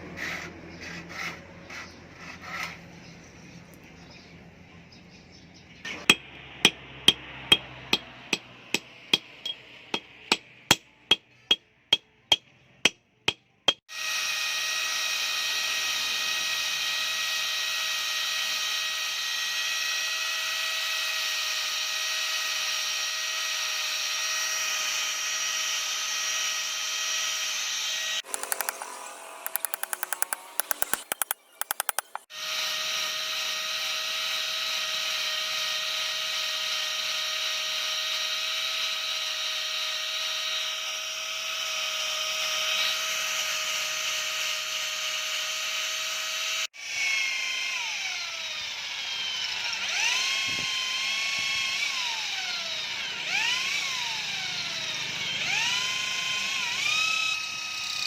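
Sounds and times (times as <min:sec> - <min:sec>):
hammer striking steel: 0:06.1 - 0:13.8
power tool whining: 0:27.0 - 0:36.4, 0:45.1 - 0:58.0.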